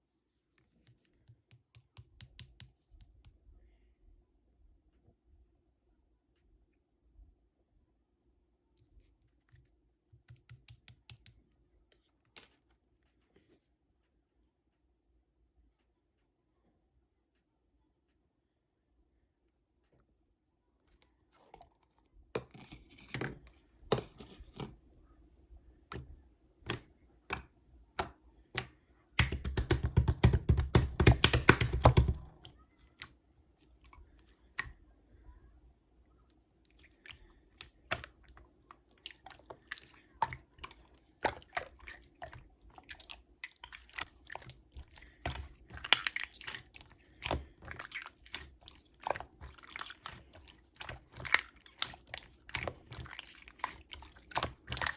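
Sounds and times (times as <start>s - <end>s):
slime squished by hand: 26.6s - 34.8s, 36.2s - 54.9s
rapid crackling of slime: 28.6s - 34.8s, 36.2s - 54.9s.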